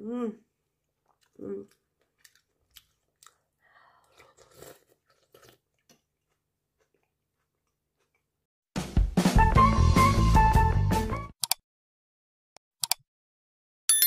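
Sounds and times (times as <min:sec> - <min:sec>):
soft chewing and clicks: 0:00.8 - 0:08.4.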